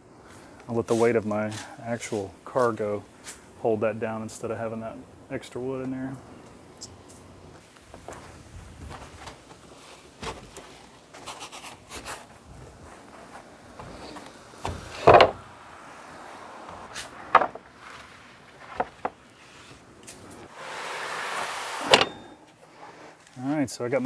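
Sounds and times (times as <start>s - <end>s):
boards knocking and rubbing: 6.4s - 22.4s
heavy thump: 13.8s - 15.5s.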